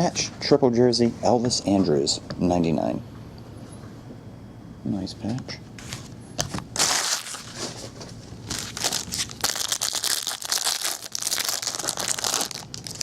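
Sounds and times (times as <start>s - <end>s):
plastic wrapping tearing and crinkling: 6.6s - 13.0s.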